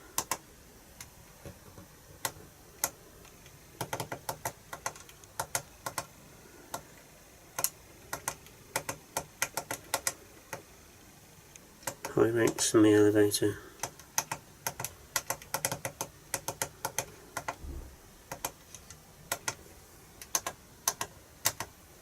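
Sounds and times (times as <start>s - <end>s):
radio transmitter buttons clicking: 20.2s - 21.8s.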